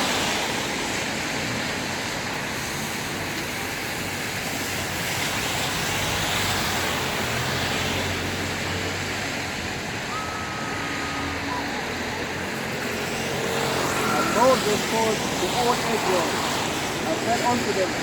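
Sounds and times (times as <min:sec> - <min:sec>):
road traffic noise: 0:00.0 - 0:18.0
thin steady high tone: 0:10.0 - 0:13.0.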